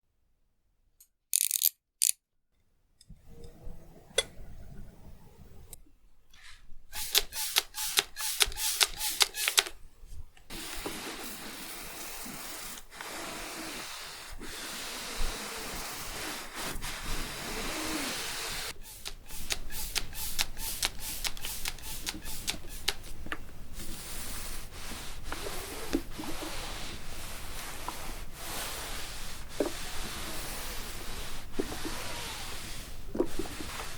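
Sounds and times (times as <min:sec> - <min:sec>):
iron hissing and rubbing on fabric: 0:06.4 - 0:09.7, 0:10.5 - 0:33.9
iron steam bursts: 0:07.0 - 0:09.7, 0:10.5 - 0:23.2.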